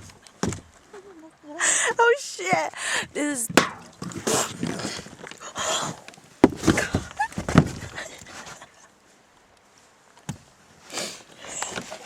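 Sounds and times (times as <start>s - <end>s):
young women laughing: 0.9s - 2.1s.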